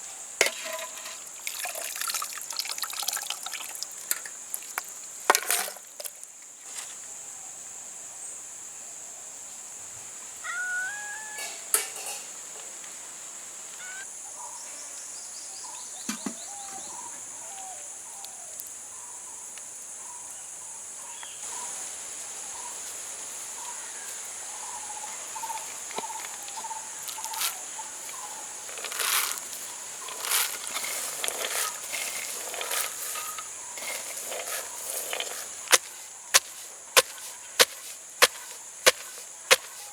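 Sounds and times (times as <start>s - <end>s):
bird chirps: 13.8s - 14.0s.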